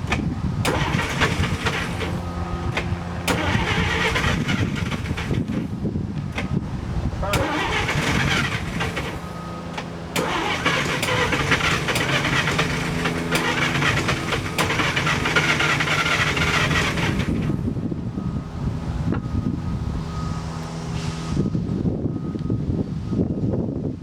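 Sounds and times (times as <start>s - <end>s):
car engine cranking on starter: 0.0s - 6.6s, 7.2s - 17.6s.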